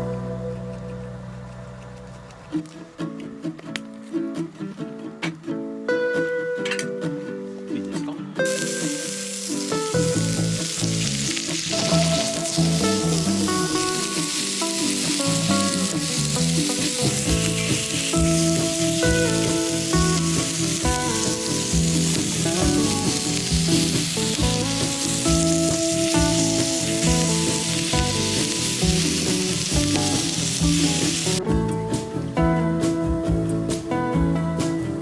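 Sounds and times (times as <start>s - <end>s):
food sizzling in a pan: 8.4s - 31.4s
background music with beat: 11.4s - 35.0s.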